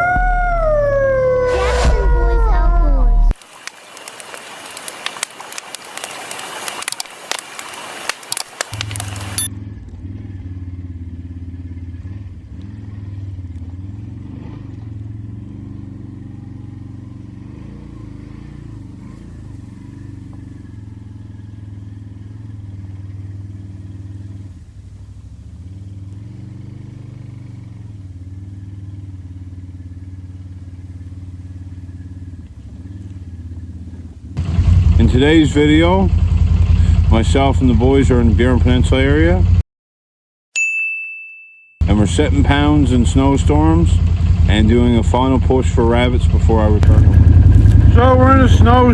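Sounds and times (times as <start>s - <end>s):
quad bike engine running: 8.7s - 39.6s, 41.8s - 48.9s.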